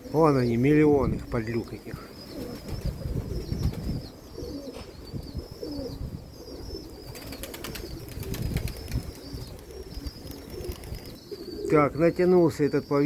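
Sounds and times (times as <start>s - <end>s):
pigeons cooing: 0.0s - 13.0s
wind rumble on microphone: 2.6s - 11.2s.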